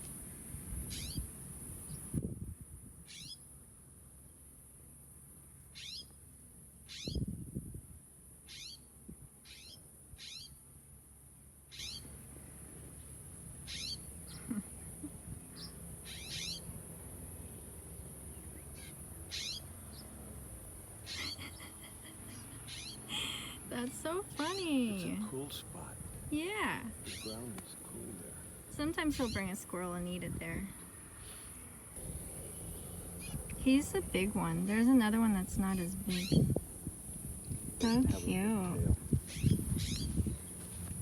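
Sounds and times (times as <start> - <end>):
bird alarm calls: 0.9 - 1.3, 3.1 - 3.4, 5.8 - 6.1, 6.9 - 7.2, 8.5 - 8.8, 9.5 - 10.6, 11.7 - 12.1, 13.6 - 14.5, 15.6 - 16.7, 18.6 - 20.0, 21.0 - 23.1, 26.9 - 27.6, 28.8 - 29.8, 33.2 - 36.6, 37.8 - 40.3.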